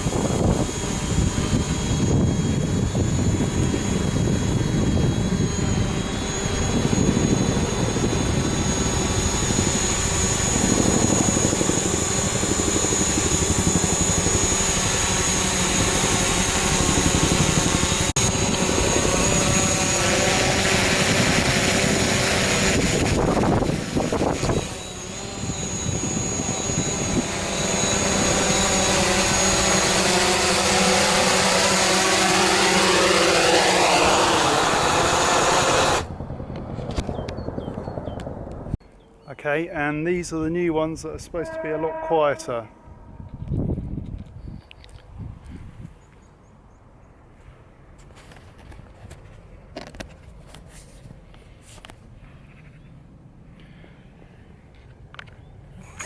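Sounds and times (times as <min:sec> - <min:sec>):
wind rumbling on microphone: 0:00.0 - 0:32.0, 0:32.7 - 0:38.8, 0:41.4 - 0:46.2
drone propellers whining: 0:00.0 - 0:46.4.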